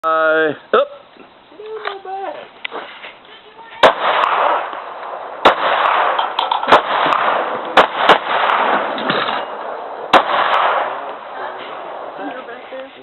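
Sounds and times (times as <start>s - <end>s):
faint gunshot cracks: 3.8s - 11.2s
pistol shots with echo: 3.8s - 12.2s.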